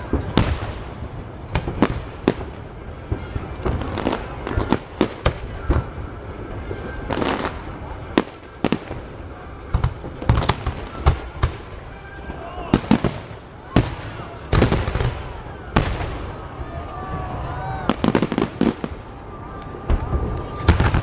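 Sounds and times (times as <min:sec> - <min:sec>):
fireworks bangs and crackles: 0:00.0 - 0:21.0.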